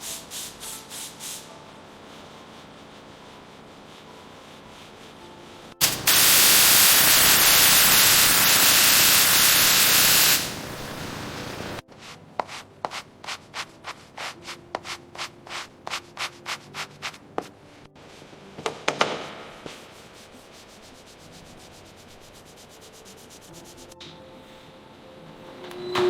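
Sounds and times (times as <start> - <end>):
hand sanding strokes: 0.0 - 11.4, 12.0 - 18.9, 19.6 - 24.0
loud steady hiss: 0.0 - 11.8, 18.0 - 24.0.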